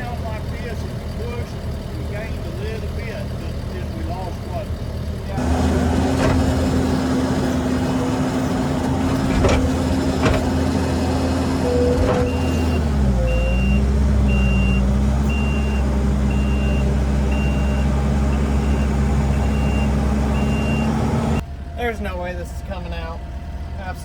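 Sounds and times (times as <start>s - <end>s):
heavy equipment engines: 0.0s - 24.0s
metal clanks: 5.4s - 12.7s
reversing alarm beeping: 11.6s - 21.0s.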